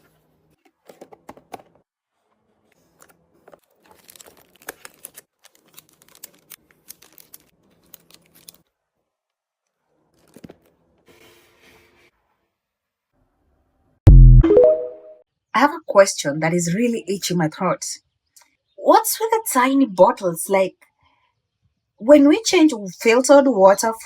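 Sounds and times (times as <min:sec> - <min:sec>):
plastic packaging crinkling: 0:03.6 - 0:08.7.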